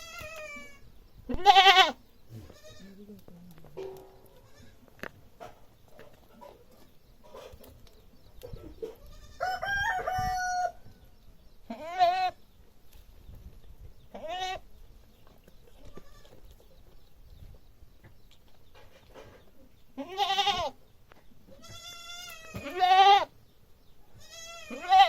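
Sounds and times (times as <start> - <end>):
goats bleating: 0.0 - 3.0, 11.7 - 12.4, 20.0 - 20.8, 21.6 - 23.3, 24.2 - 25.0.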